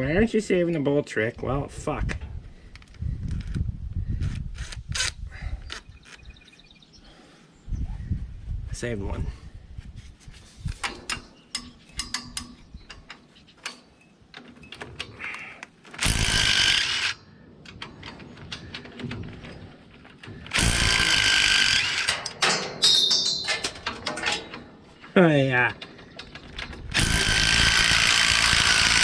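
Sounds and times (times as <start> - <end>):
metallic clicks and knocks: 10.7 - 16.1, 16.7 - 20.6, 21.7 - 27.1
power tool spinning out bolts: 15.9 - 17.2, 20.3 - 23.4, 25.9 - 29.0.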